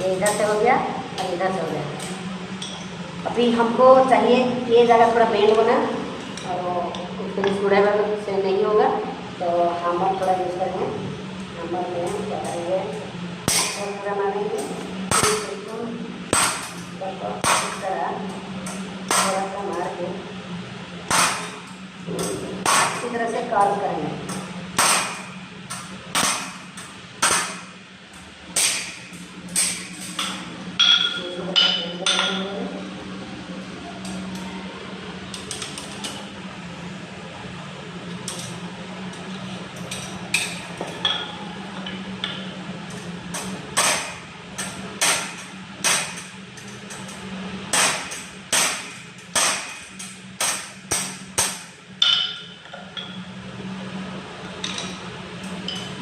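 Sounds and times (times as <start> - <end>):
steady low hum: 0.0 - 56.0
hammer striking steel wire: 13.5 - 13.9, 15.1 - 15.5, 16.3 - 16.8, 17.4 - 17.8, 18.6 - 19.4, 21.1 - 23.1, 24.3 - 27.7, 28.6 - 32.4, 43.4 - 46.3, 47.7 - 53.2.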